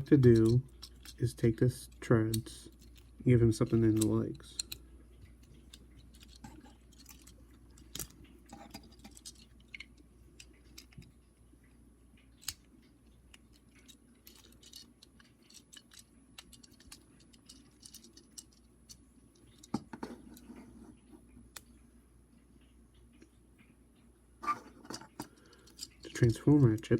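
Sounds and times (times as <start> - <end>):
plastic toy parts clicking: 0.0 - 11.1, 12.4 - 19.8, 24.8 - 26.9.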